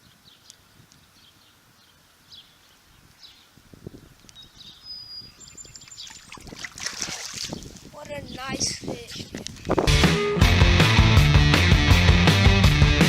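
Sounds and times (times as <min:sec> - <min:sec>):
birds chirping: 0:00.0 - 0:10.0.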